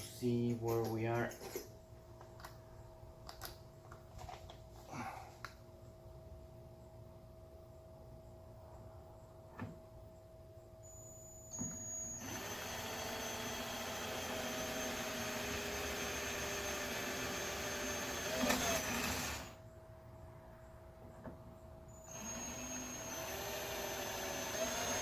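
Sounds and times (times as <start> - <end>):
electric drill whining: 11.5 - 19.6, 22.0 - 25.0.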